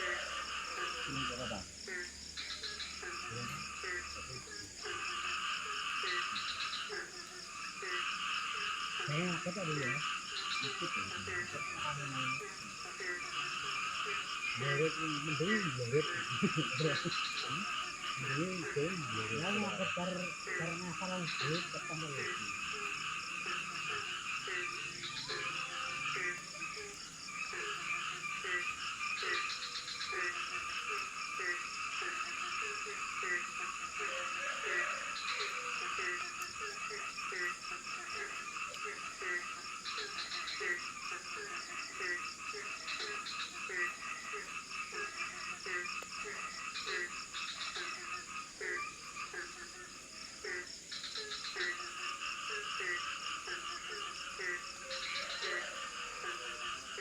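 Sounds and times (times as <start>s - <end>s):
frog calling with low falling notes: 0.0s - 57.0s
high insect whine: 0.0s - 57.0s
pulsing frog chorus: 0.0s - 57.0s.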